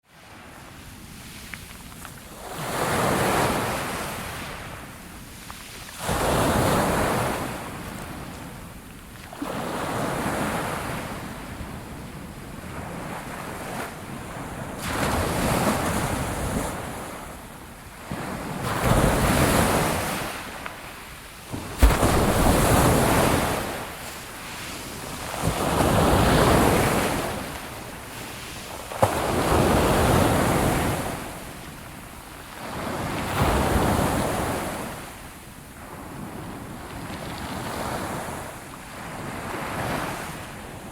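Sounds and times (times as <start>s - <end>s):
ocean waves breaking: 18.0s - 31.6s.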